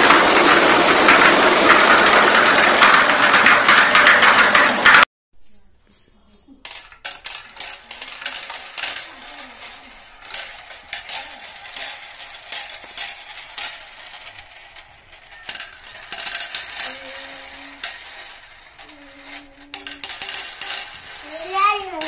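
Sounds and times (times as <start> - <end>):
marbles rolling down a track: 0.0 - 5.1, 6.6 - 22.0
marbles clicking together: 6.7 - 22.0.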